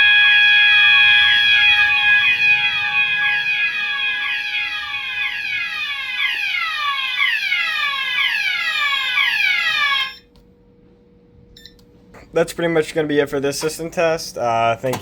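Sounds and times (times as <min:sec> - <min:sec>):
fire alarm sounder: 0:00.0 - 0:10.3.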